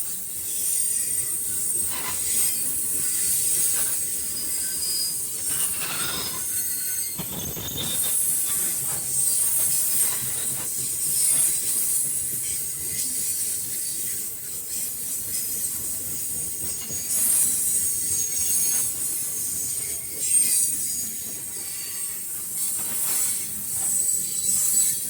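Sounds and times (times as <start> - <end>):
train wheels rushing on rail: 0.0 - 25.0
high-pitched wheel squeals: 2.0 - 11.6.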